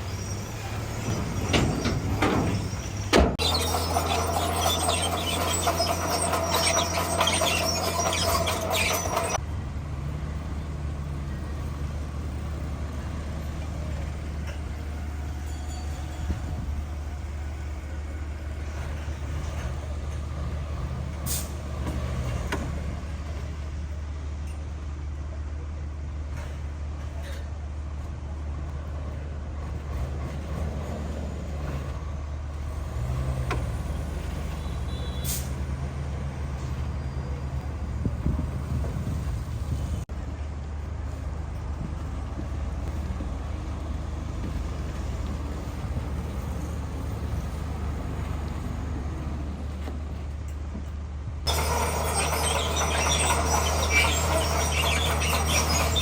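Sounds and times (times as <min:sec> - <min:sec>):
bulldozer diesel engine running: 0:00.0 - 0:27.0, 0:27.6 - 0:56.0
loud harsh rattling: 0:01.1 - 0:09.4, 0:51.5 - 0:56.0.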